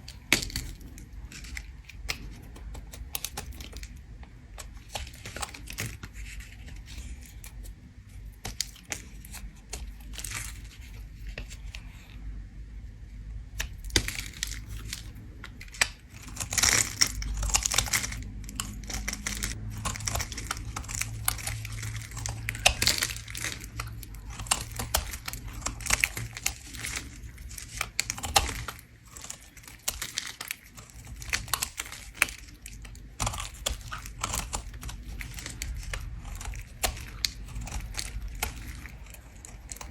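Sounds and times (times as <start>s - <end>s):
blade scraping soap: 13.6s - 39.9s.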